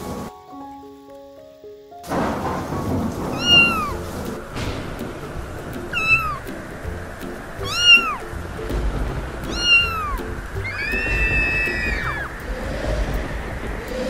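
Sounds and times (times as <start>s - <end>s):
kittens meowing: 3.3s - 4.1s, 5.8s - 6.6s, 7.6s - 13.2s.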